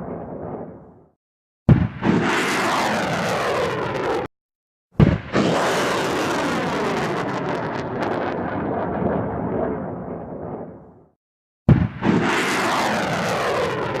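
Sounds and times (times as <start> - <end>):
rocket launch blast: 1.7 - 4.3, 5.0 - 11.0, 11.7 - 14.0
rocket rumbling roar: 1.9 - 4.3, 5.0 - 11.1, 11.8 - 14.0.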